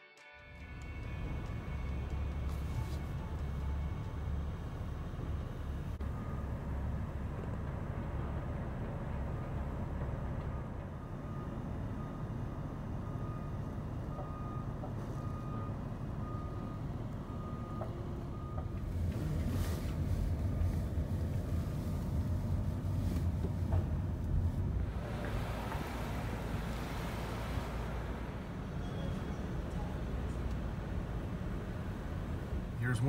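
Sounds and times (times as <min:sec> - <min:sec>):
low vehicle and road rumble: 0:00.6 - 0:33.0
reversing alarm beeping: 0:10.5 - 0:18.8.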